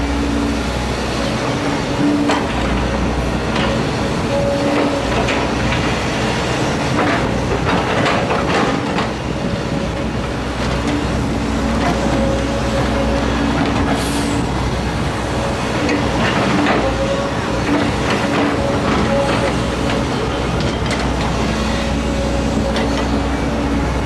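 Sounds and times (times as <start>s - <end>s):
excavator diesel engine running: 0.0s - 24.0s.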